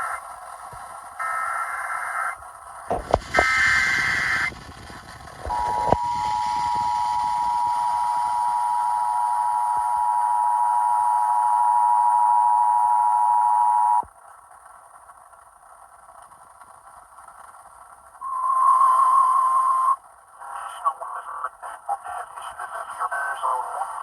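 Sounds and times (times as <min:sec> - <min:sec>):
screechy digital data burst: 0:05.5 - 0:14.0
two-tone alert signal: 0:05.5 - 0:14.0.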